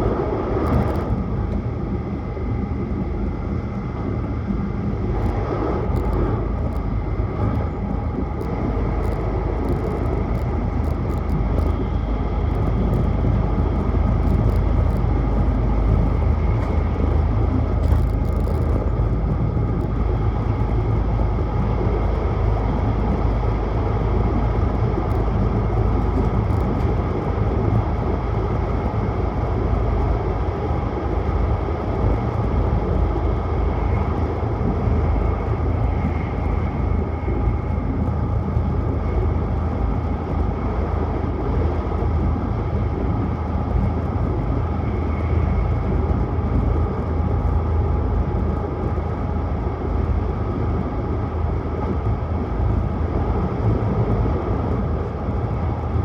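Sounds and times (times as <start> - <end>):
train rumbling at speed: 0.0 - 56.0
faint clicks and rattles: 5.2 - 23.5.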